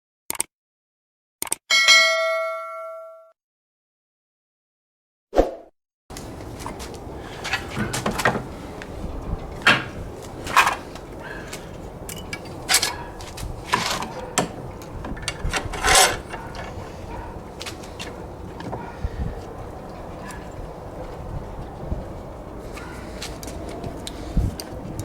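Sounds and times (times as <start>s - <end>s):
wood knocking and scraping: 6.2s - 11.1s, 12.3s - 17.2s.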